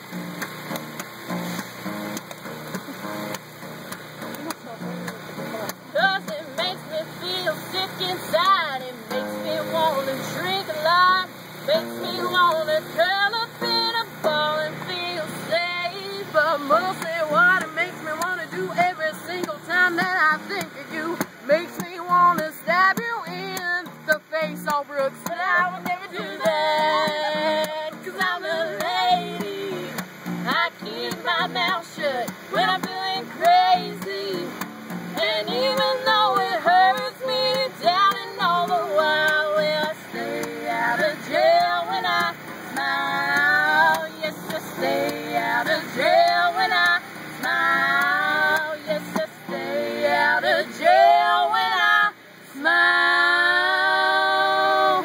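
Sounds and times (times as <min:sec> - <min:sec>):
woman singing: 0:05.9 - 0:55.0.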